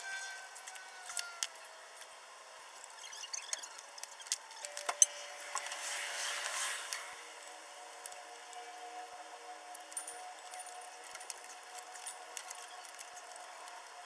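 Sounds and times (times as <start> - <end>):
faint steady hum: 0.0 - 14.0
hand tools clicking and clinking: 9.9 - 13.8.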